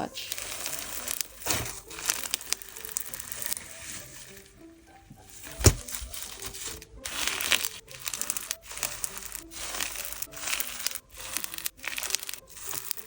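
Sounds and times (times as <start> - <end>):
slime crackling and crunching: 0.2 - 13.0.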